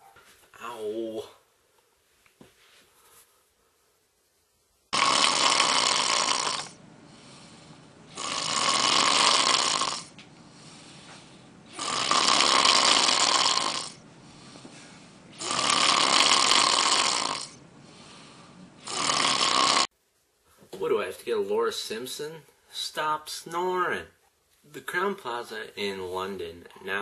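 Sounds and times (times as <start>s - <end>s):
person snoring loudly: 4.9s - 6.8s, 8.1s - 10.2s, 11.7s - 14.0s, 15.4s - 17.6s, 18.8s - 19.9s.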